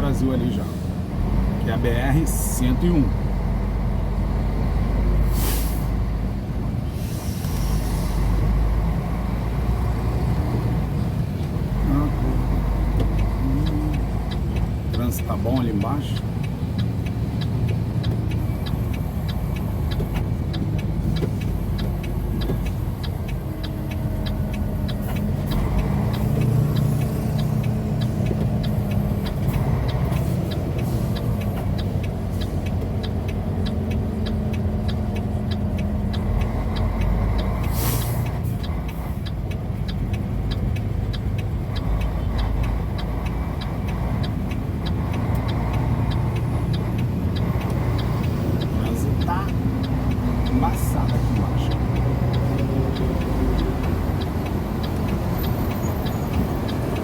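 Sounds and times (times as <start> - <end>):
faint regular ticking: 0.0 - 57.0
road noise: 0.0 - 57.0
truck diesel engine running: 0.0 - 57.0
air brake hiss: 5.3 - 5.9, 6.9 - 8.3, 37.7 - 38.2.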